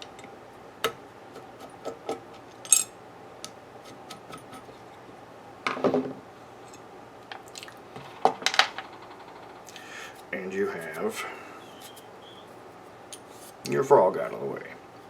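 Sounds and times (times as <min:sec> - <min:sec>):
metal plane parts clinking: 0:02.6 - 0:02.9.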